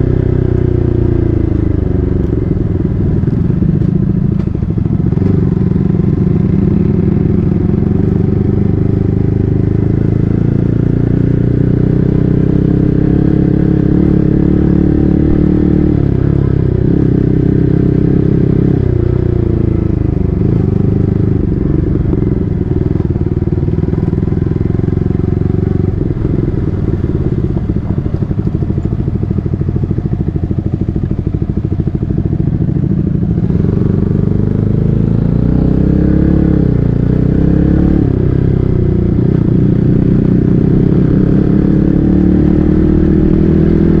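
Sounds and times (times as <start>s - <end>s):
motorcycle engine while riding: 0.0s - 44.0s.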